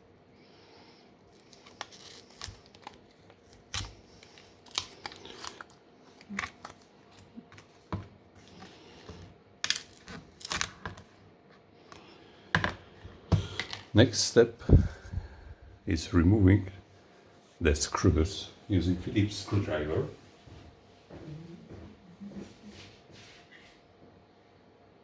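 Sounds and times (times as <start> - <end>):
tearing and scraping: 1.3 - 7.7.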